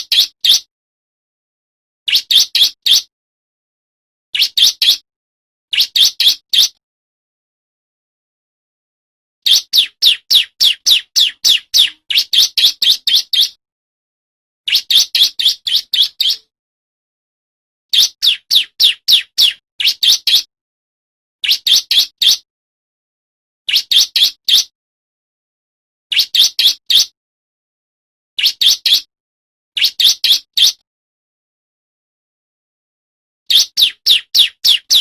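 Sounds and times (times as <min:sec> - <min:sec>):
bird singing sharp high chirps: 0:00.0 - 0:00.7, 0:02.1 - 0:03.1, 0:04.4 - 0:05.0, 0:05.7 - 0:06.8, 0:09.4 - 0:13.6, 0:14.7 - 0:16.5, 0:17.9 - 0:20.5, 0:21.4 - 0:22.4, 0:23.7 - 0:24.7, 0:26.1 - 0:27.1, 0:28.4 - 0:29.1, 0:29.8 - 0:30.8, 0:33.5 - 0:35.0.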